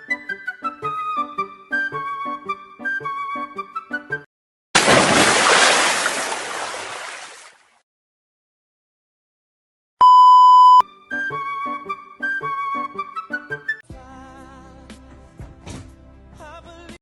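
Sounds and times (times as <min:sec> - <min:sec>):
censor bleep tone: 0:10.0 - 0:10.8.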